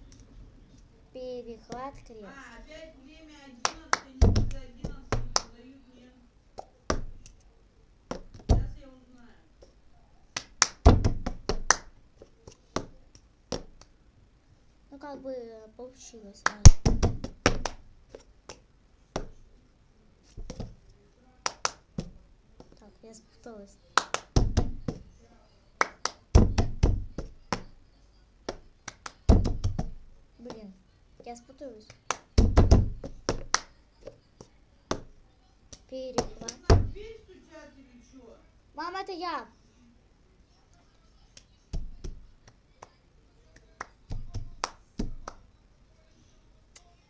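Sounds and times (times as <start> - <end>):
dull thumps: 3.6 - 5.5, 6.6 - 7.3, 8.1 - 8.9, 10.4 - 13.8, 16.5 - 18.6, 20.3 - 20.9, 24.1 - 25.0, 26.3 - 27.8, 28.5 - 30.7, 32.4 - 33.7, 34.4 - 37.1, 41.7 - 42.3, 44.1 - 45.4
hand claps and slaps: 3.6 - 5.6, 6.6 - 7.4, 8.1 - 8.8, 10.4 - 13.9, 16.4 - 18.6, 19.2 - 19.4, 20.3 - 20.8, 21.4 - 22.8, 24.0 - 25.0, 25.8 - 27.8, 28.5 - 30.7, 31.8 - 35.1, 35.7 - 37.0, 41.4 - 43.0, 43.6 - 45.4
plastic cup tapping on book: 6.6 - 7.4, 8.1 - 8.8, 19.2 - 19.4, 20.3 - 20.8, 28.5 - 30.6, 32.0 - 35.1, 41.7 - 42.2, 44.1 - 45.4.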